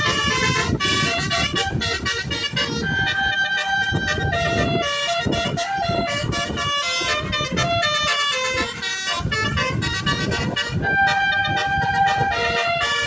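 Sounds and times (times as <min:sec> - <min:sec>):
musical bus air horn: 0:00.0 - 0:13.0.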